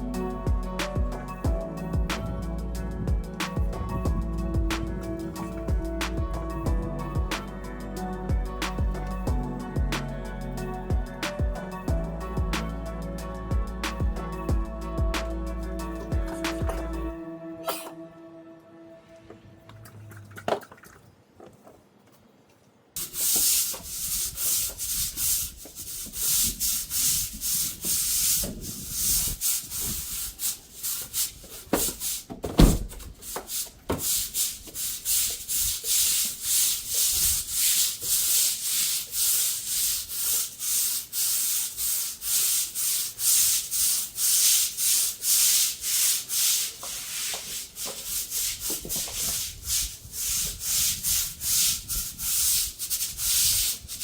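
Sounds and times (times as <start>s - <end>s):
harsh scrubbing strokes: 23.0s - 32.2s, 33.2s - 54.0s.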